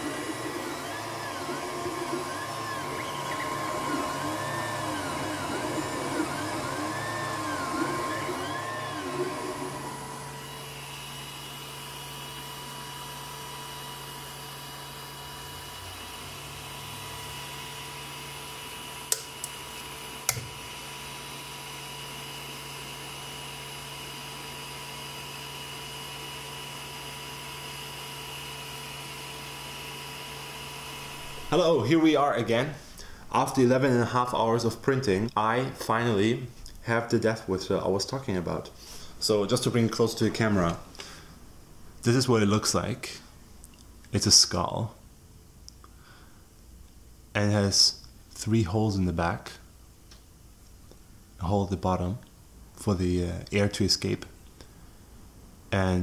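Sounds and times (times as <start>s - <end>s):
stepper motors whining: 0.0s - 11.2s, 30.6s - 32.0s
motor and fan hum: 0.0s - 36.3s.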